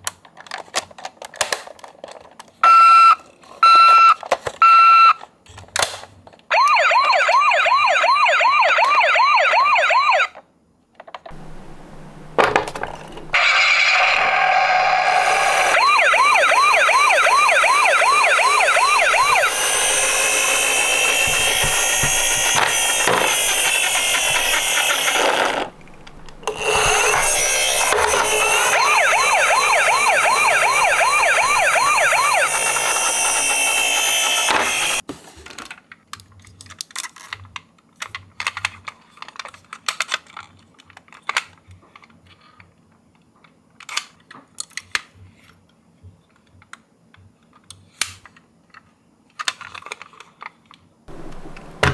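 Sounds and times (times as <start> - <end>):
layered siren tones: 6.5 - 10.3, 15.0 - 35.0
siren yelp: 6.5 - 10.3, 15.0 - 35.0.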